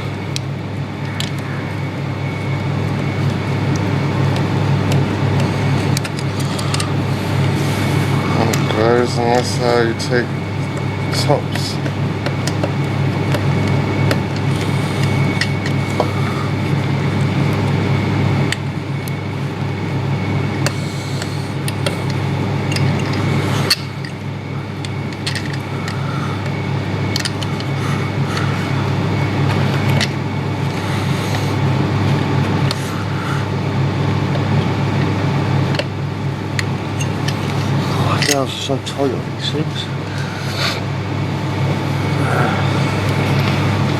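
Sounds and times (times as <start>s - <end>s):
steady low hum: 0.0s - 43.9s
hand tools clicking on metal: 3.2s - 17.7s, 20.6s - 28.9s, 36.5s - 38.9s.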